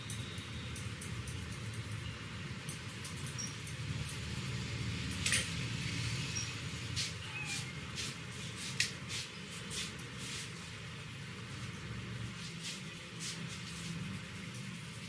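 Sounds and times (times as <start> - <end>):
hair and scalp being rubbed: 6.9 - 15.0.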